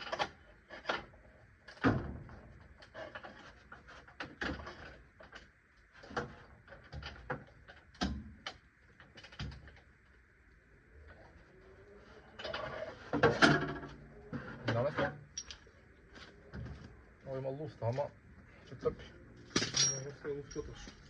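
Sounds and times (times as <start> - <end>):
tools and car parts clicking: 15.3 - 15.7, 19.5 - 21.0.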